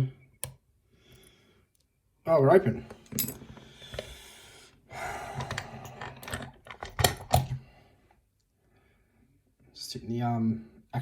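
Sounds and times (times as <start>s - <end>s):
lock and picking tools rattling: 2.9s - 4.1s, 5.4s - 7.6s.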